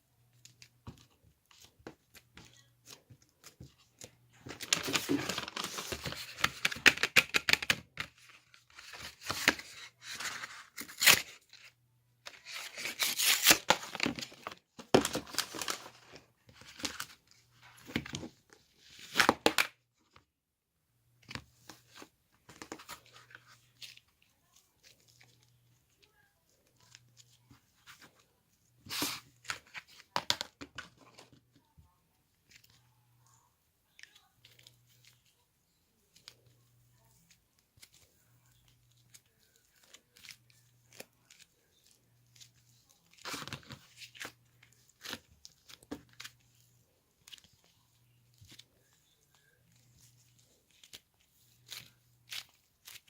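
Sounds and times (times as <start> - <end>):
crackling and tearing handling noise: 0.4 - 11.7, 12.3 - 19.7.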